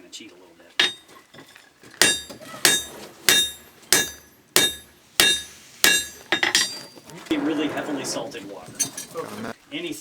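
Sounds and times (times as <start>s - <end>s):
hammer striking iron on anvil: 0.8s - 1.0s, 2.0s - 6.9s.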